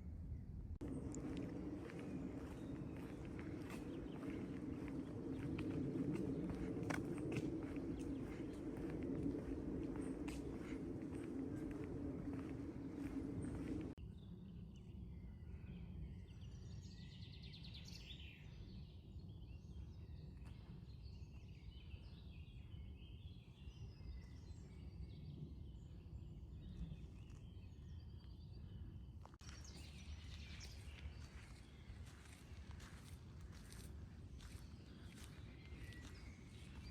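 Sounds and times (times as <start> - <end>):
loud low hum: 0.0 - 14.0
low steady rumble: 0.0 - 14.0
footsteps crunching on a path: 0.8 - 14.0, 29.2 - 36.9
small birds chirping: 0.8 - 14.0, 15.3 - 36.9.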